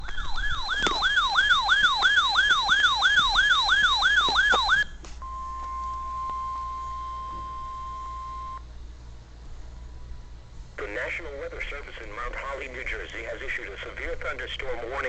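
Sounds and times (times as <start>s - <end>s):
electronic siren alarm sweeping down: 0.0s - 8.6s
steady warning alarm tone: 0.0s - 8.7s.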